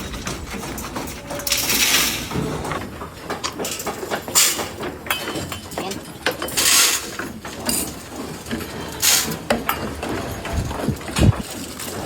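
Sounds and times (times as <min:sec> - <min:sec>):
deep thumps: 0:10.5 - 0:11.4.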